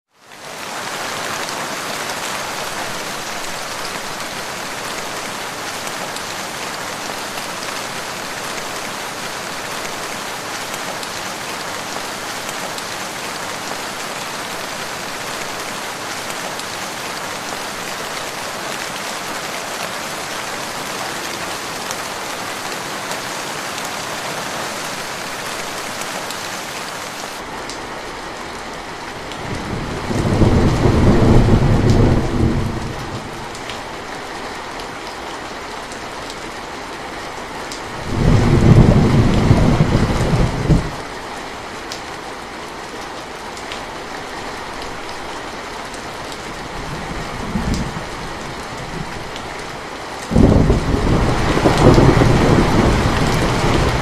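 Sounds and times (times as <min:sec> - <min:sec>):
steady rain falling: 0:00.1 - 0:54.0.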